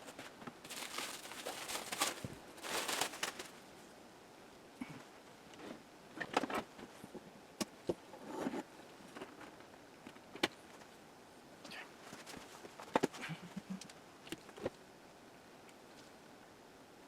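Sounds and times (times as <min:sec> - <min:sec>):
short rustle: 0:00.1 - 0:03.6.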